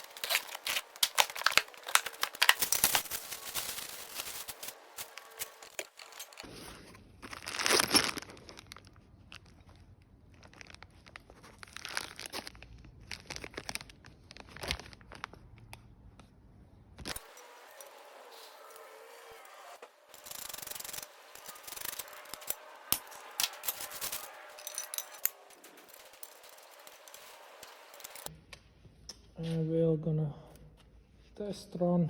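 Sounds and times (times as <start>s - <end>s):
packaging crinkling and tearing: 0.0s - 15.7s, 20.2s - 28.3s.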